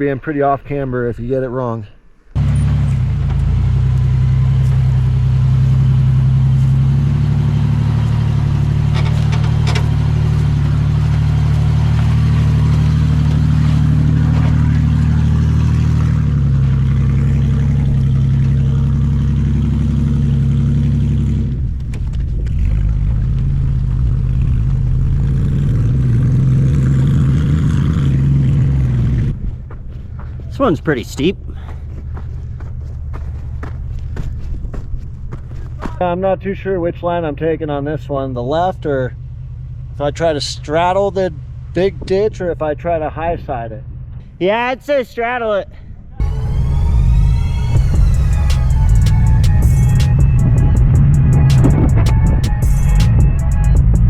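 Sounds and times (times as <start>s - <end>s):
van engine running under load: 2.4s - 36.8s, 46.2s - 54.0s.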